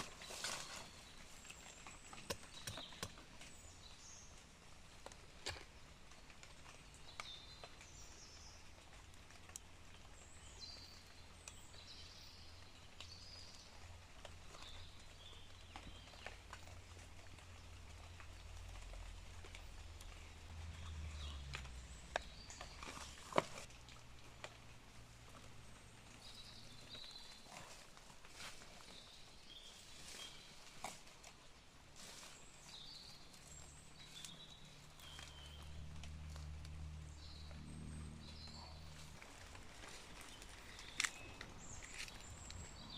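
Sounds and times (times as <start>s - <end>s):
birds chirping: 5.1s - 23.7s, 31.5s - 42.9s
steps on leaf litter: 12.9s - 23.9s, 26.1s - 42.9s.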